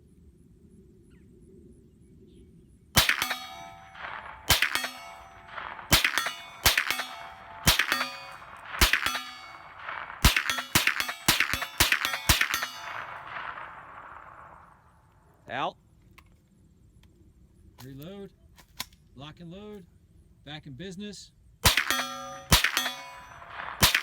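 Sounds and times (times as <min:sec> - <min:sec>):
steel target clanging: 0:03.0 - 0:14.8, 0:21.6 - 0:24.0
gunshots: 0:03.0 - 0:15.0, 0:21.6 - 0:24.0.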